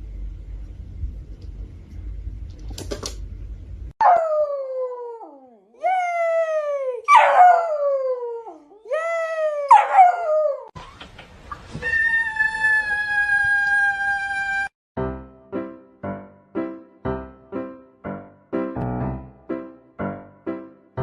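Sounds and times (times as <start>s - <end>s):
dog howling: 11.8s - 14.7s.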